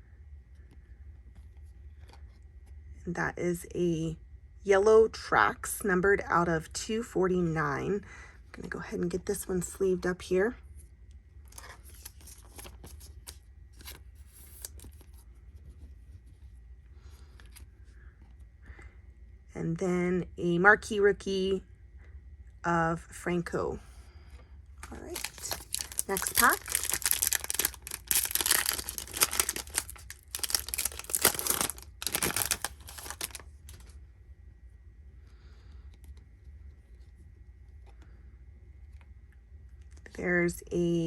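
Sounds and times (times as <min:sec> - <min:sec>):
plastic card sleeve rustling: 0:11.5 - 0:16.4, 0:24.8 - 0:34.0
wrapper tearing and crinkling: 0:24.8 - 0:33.9.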